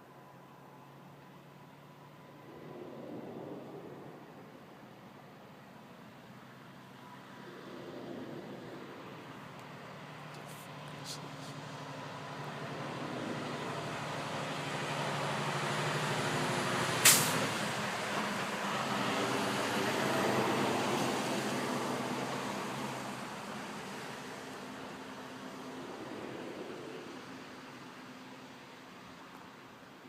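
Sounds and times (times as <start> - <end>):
low droning hum: 0.4 - 6.0.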